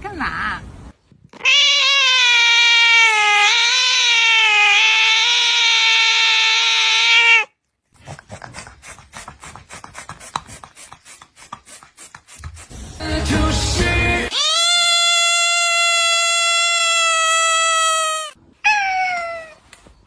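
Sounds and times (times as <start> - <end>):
cat yowling: 1.4 - 7.6, 14.3 - 19.6.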